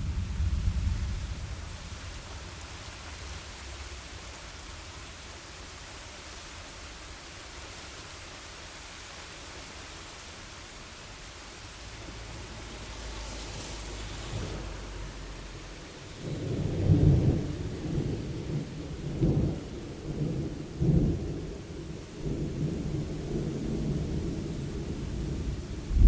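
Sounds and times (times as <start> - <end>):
low rumble of thunder: 0.0 - 5.0, 11.8 - 26.0
steady rain hiss: 0.0 - 26.0.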